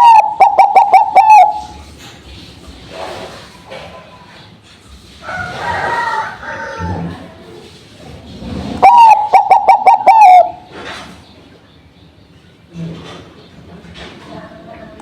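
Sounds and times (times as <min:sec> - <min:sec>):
dove cooing: 0:00.0 - 0:01.9, 0:08.8 - 0:11.0.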